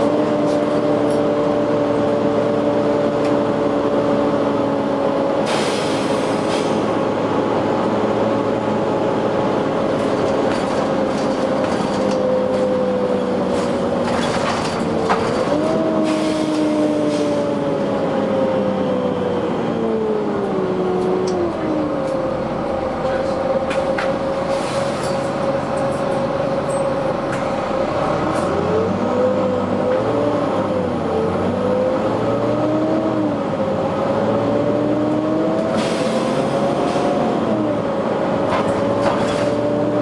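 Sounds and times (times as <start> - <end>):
bus engine whine: 0.0 - 40.0
air brake hisses: 5.4 - 6.9, 24.5 - 25.2, 35.7 - 37.2.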